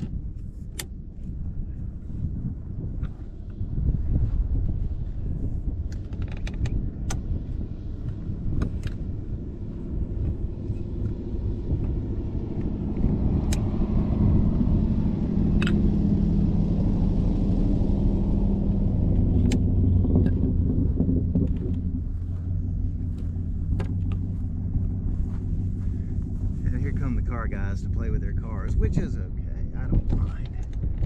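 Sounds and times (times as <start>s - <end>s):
car engine running: 0.0s - 31.0s
wind rumble on microphone: 0.0s - 31.0s
sharp clicks and knocks: 5.8s - 7.3s, 8.0s - 9.1s, 15.5s - 15.9s, 19.1s - 20.5s, 23.1s - 24.9s, 29.9s - 31.0s.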